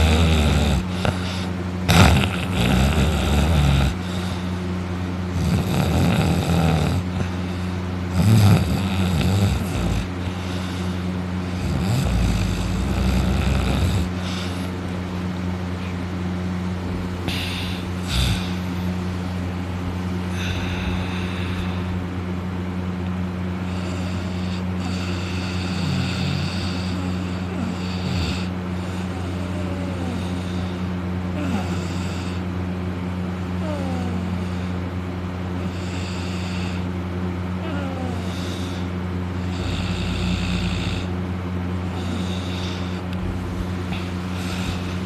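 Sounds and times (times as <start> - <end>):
man snoring heavily: 0.0 - 14.9, 17.2 - 19.4, 20.2 - 22.0, 23.6 - 32.6, 33.6 - 34.8, 35.5 - 45.0
steady low drone: 9.8 - 36.9, 37.5 - 45.0.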